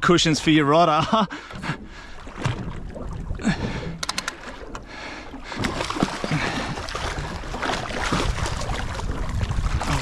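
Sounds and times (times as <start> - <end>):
water lapping against boat hull: 0.0 - 10.0
sharp clicks: 4.0 - 4.4.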